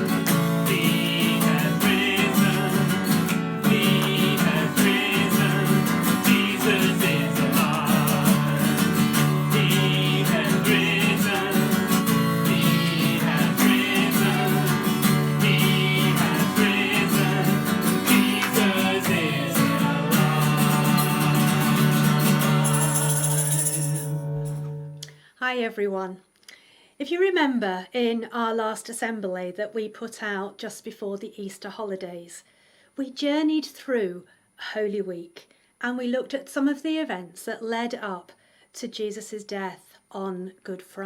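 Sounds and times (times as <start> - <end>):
strummed acoustic guitar music: 0.0 - 25.0.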